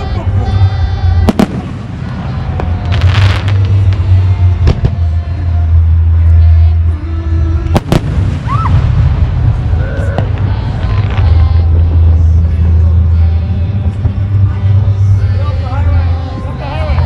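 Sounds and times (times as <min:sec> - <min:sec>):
steady low rumble: 0:00.0 - 0:17.0
firework crackle: 0:01.2 - 0:05.2, 0:07.7 - 0:12.4
firework bangs: 0:01.3 - 0:05.2, 0:07.7 - 0:12.1.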